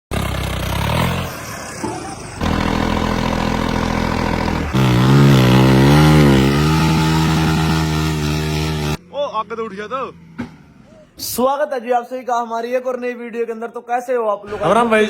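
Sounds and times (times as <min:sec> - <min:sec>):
vehicle engines running: 0:00.1 - 0:11.2.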